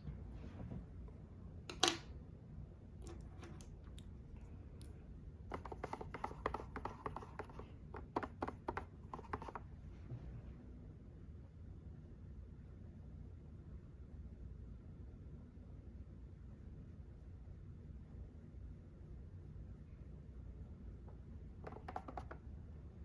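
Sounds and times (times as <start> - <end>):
makeup cases clicking: 5.5 - 9.6, 21.6 - 22.4.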